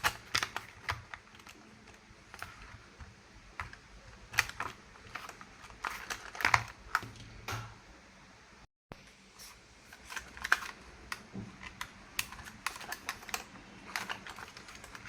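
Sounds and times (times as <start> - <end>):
plastic toy clicks and taps: 10.1 - 15.0.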